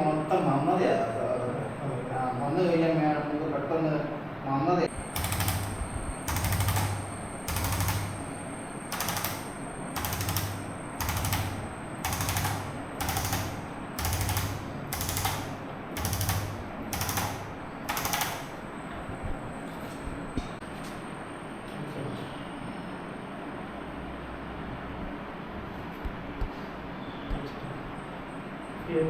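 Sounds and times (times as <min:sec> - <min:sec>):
rapid mechanical rattling: 0:04.9 - 0:18.6.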